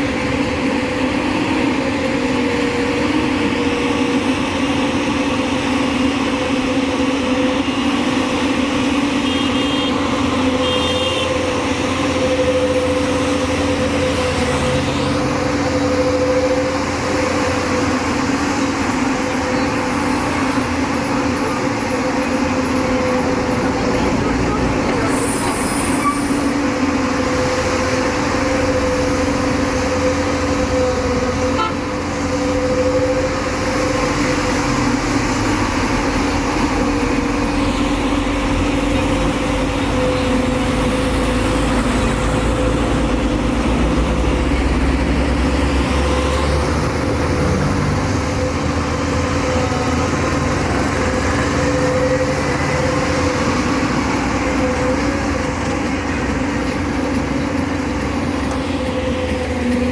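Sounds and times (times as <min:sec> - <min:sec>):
diesel engine running: 0:00.0 - 0:59.9.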